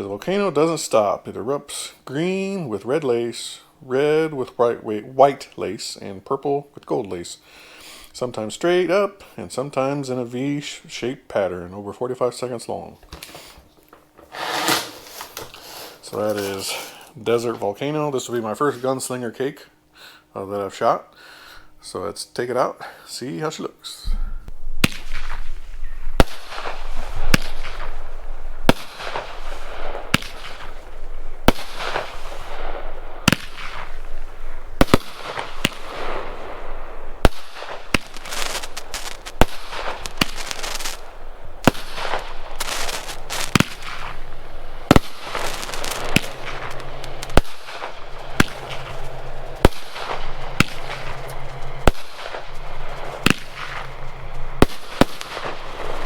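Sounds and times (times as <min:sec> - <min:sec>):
firework crackling hiss: 0:14.2 - 0:17.1, 0:24.8 - 0:56.0
firework reports: 0:14.3 - 0:19.7, 0:24.8 - 0:56.0.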